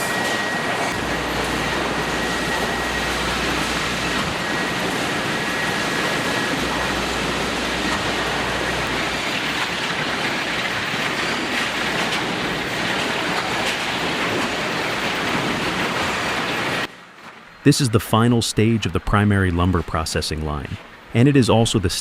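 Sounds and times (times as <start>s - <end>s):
sawmill machinery rumble: 0.0s - 17.0s.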